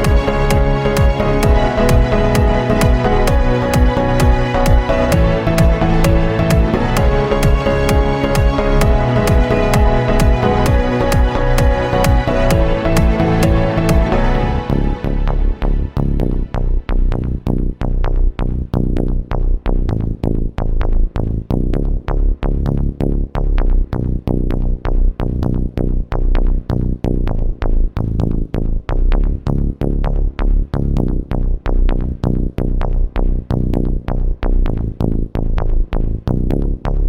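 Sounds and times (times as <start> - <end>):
electronic dance music: 0.0 - 16.6.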